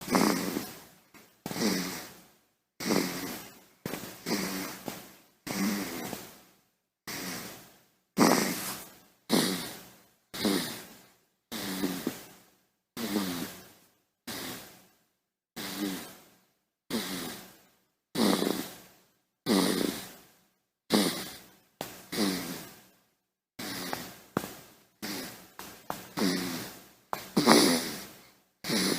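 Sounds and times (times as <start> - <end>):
baby snoring: 0.0 - 0.9, 1.5 - 2.2, 2.8 - 6.4, 7.1 - 12.3, 13.0 - 13.7, 14.3 - 14.8, 15.6 - 16.3, 16.9 - 17.6, 18.2 - 18.8, 19.4 - 20.2, 20.9 - 21.5, 22.1 - 22.8, 23.6 - 24.4, 25.0 - 28.9.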